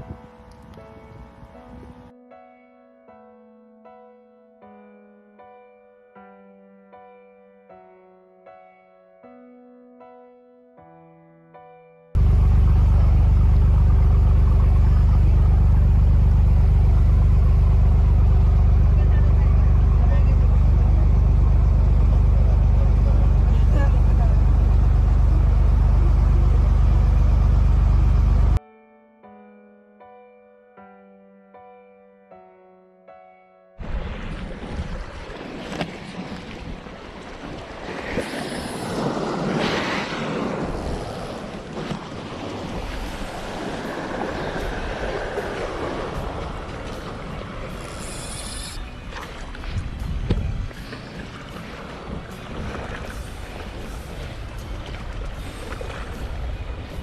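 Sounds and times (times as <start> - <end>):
engine running with low rumble: 12.2 - 28.6, 40.5 - 57.0
sea waves washing against rocks: 33.8 - 48.7
wind buffeting microphone: 49.0 - 57.0.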